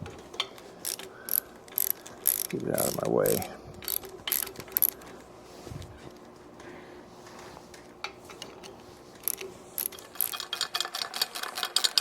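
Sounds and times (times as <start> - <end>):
ratchet wrench clicking: 0.8 - 5.0, 9.2 - 12.0.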